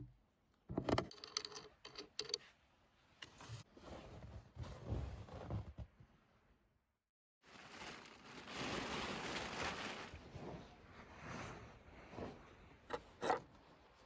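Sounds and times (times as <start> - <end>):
handling clicks and knocks: 0.7 - 2.4.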